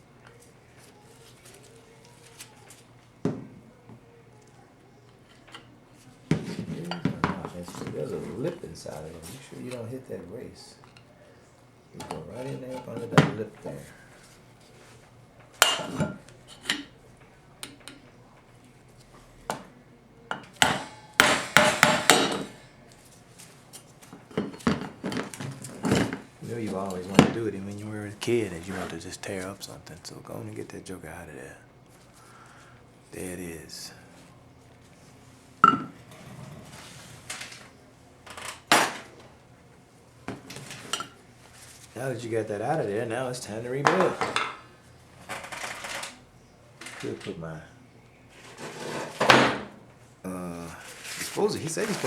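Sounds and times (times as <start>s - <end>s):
metal parts clanking on workbench: 15.6s - 16.9s.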